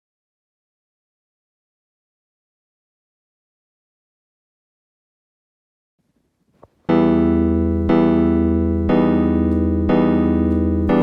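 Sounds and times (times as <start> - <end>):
keyboard playing held chords: 6.9 - 11.0.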